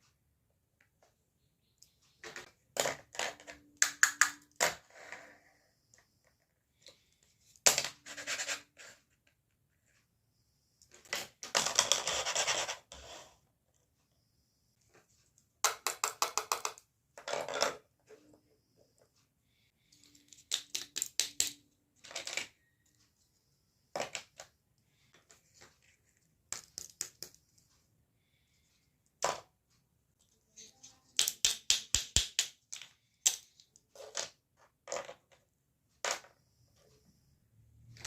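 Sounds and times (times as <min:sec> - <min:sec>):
plastic pieces clicking and tapping: 0:01.8 - 0:04.9, 0:10.8 - 0:12.8, 0:15.3 - 0:17.9, 0:19.9 - 0:22.7, 0:23.9 - 0:25.8, 0:26.4 - 0:27.5, 0:30.2 - 0:36.4
rubbing and scratching: 0:07.2 - 0:10.1, 0:10.9 - 0:13.5.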